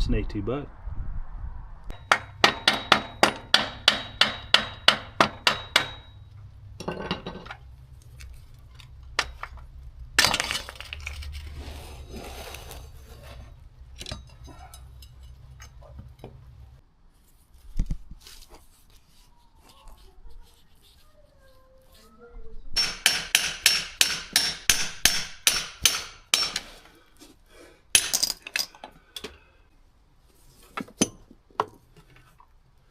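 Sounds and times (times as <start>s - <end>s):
hammer striking metal: 1.9s - 7.2s, 22.8s - 26.7s
metal tools rattling and clattering: 6.8s - 7.6s, 13.9s - 16.6s.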